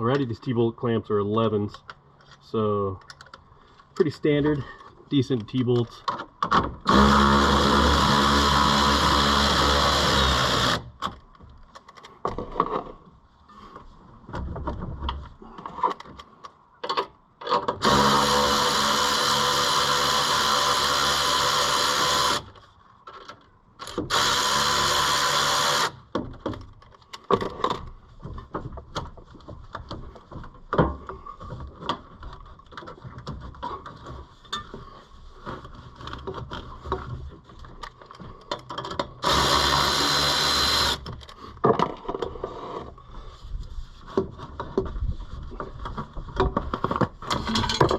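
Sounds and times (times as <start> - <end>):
cordless power tool whirring: 6.8 - 10.9, 17.8 - 22.6, 23.8 - 26.0, 39.2 - 41.1
metal clamps clicking and clanking: 47.2 - 47.9.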